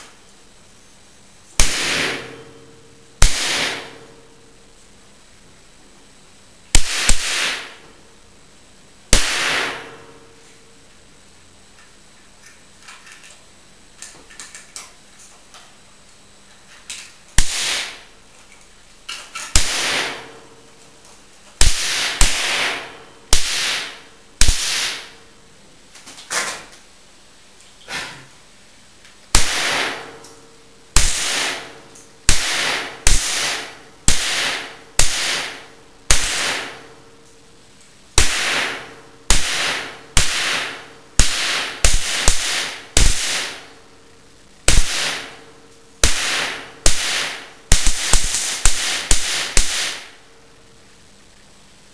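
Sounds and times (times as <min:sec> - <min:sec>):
sharp cracks with hissing decay: 0:01.5 - 0:04.6, 0:06.6 - 0:08.4, 0:09.0 - 0:10.4, 0:17.3 - 0:18.2, 0:19.4 - 0:20.6, 0:21.6 - 0:25.2, 0:29.3 - 0:50.6.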